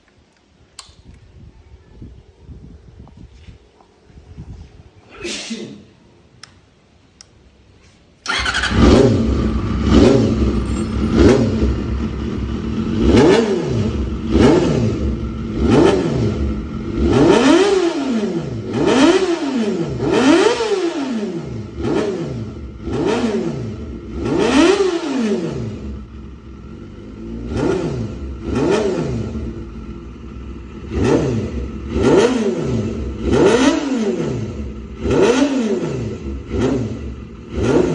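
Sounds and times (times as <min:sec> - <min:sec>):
motorcycle engine revving: 0:08.2 - 0:37.9.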